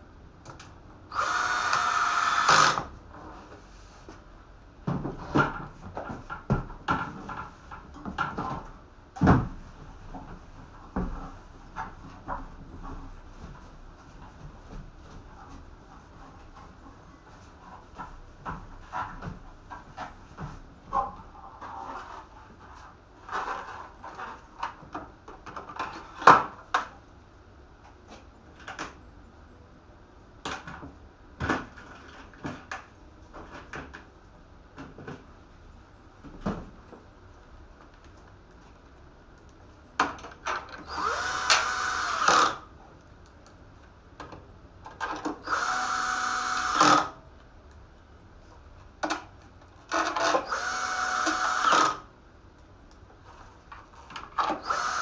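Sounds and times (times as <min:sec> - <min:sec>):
electric screwdriver running: 0:01.1 - 0:02.9, 0:40.9 - 0:42.6, 0:45.4 - 0:47.1, 0:50.0 - 0:52.0, 0:54.5 - 0:55.0.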